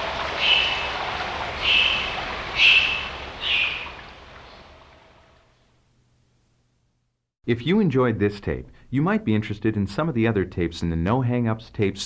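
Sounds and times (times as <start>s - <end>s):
high bird call: 0.0s - 4.9s.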